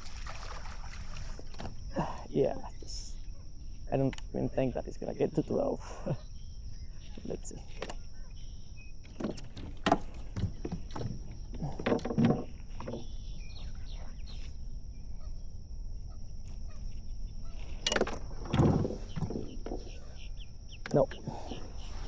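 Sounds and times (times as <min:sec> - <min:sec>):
high insect drone: 0:00.0 - 0:22.0
knocks and thumps from handling fish: 0:09.2 - 0:13.1, 0:17.9 - 0:20.0.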